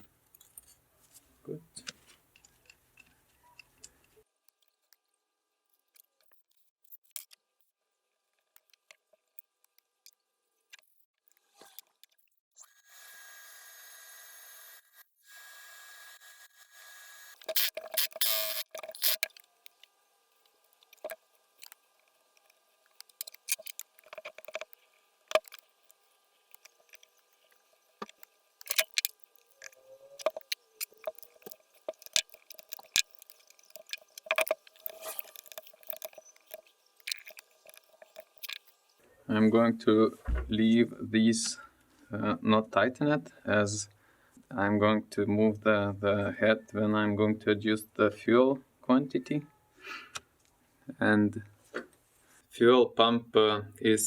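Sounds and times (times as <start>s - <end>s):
metal tools clicking and scraping: 22.4s - 38.8s.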